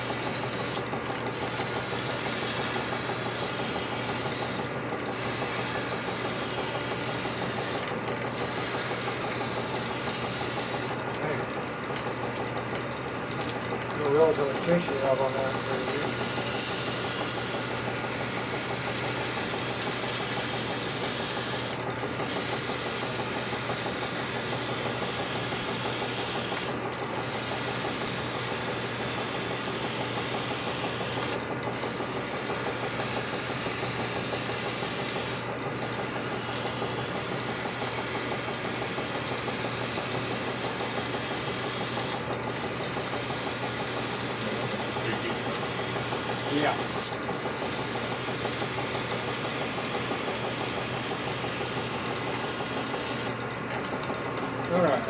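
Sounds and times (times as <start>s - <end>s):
lathe humming: 0.0s - 53.9s
sandpaper hissing on spinning metal: 14.2s - 53.4s.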